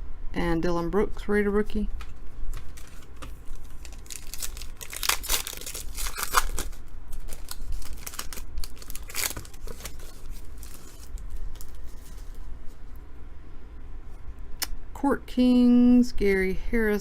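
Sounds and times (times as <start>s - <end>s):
rustling of wrapper and cards: 2.0s - 12.9s
wrapper tearing: 2.6s - 12.5s.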